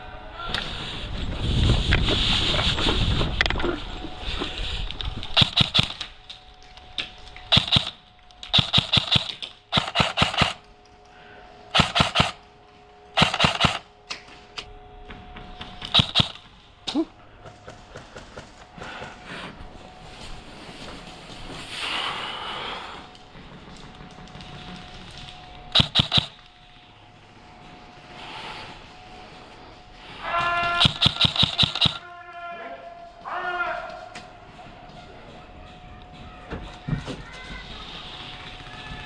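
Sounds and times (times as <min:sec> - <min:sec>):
airsoft gun bursts: 0:05.3 - 0:06.2, 0:07.5 - 0:10.7, 0:11.7 - 0:12.4, 0:13.2 - 0:13.9, 0:15.8 - 0:16.5, 0:25.7 - 0:26.5, 0:30.4 - 0:32.1.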